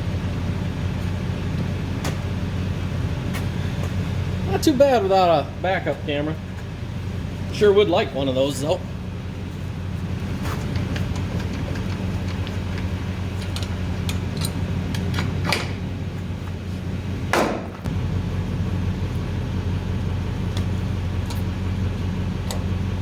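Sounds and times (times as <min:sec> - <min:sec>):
truck engine idling: 0:00.0 - 0:23.0
metallic clicks and knocks: 0:10.6 - 0:15.8.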